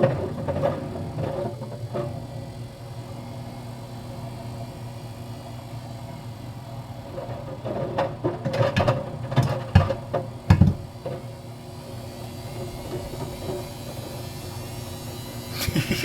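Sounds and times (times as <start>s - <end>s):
washing machine humming: 0.0s - 16.0s
plastic parts knocking in drum: 7.7s - 10.9s.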